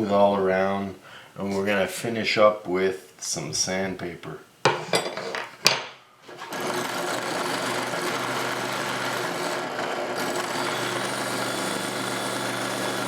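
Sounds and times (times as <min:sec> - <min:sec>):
drill press motor running: 0:06.3 - 0:13.0.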